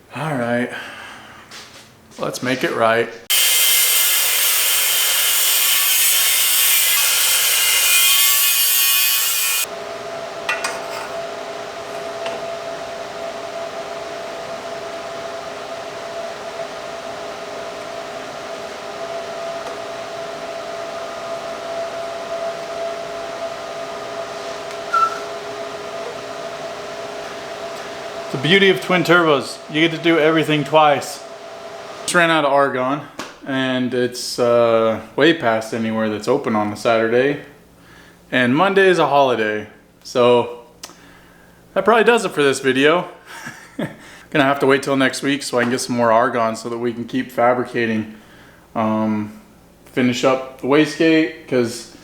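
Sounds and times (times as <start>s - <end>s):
power tool cutting metal pipe: 3.3s - 9.7s.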